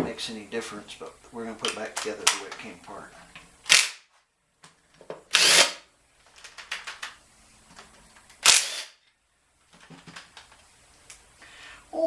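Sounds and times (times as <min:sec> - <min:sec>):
power tool bursts: 0:05.3 - 0:05.8, 0:08.4 - 0:09.0.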